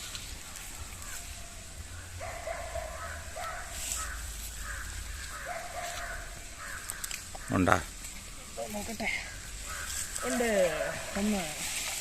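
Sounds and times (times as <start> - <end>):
crows cawing: 1.0 - 8.0, 9.0 - 11.2.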